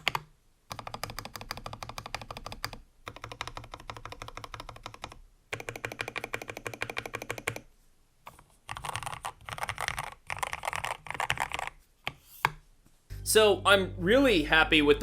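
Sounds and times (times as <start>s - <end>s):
mechanical keyboard typing: 0.0s - 7.7s, 8.7s - 11.8s.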